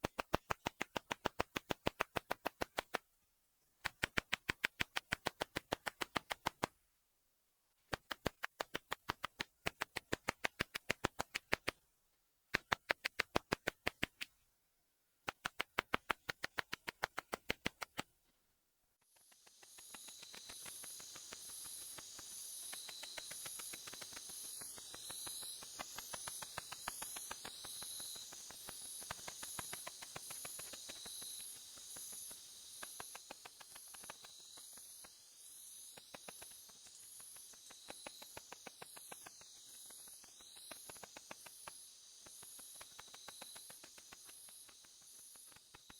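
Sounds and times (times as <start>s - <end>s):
katydid rapid clicks: 0.0s - 3.0s, 3.8s - 6.8s, 7.9s - 11.8s, 12.5s - 14.4s, 15.3s - 18.1s, 19.0s - 45.9s
high-pitched insect tones pulsing: 19.1s - 45.9s
steady hiss: 19.1s - 45.9s.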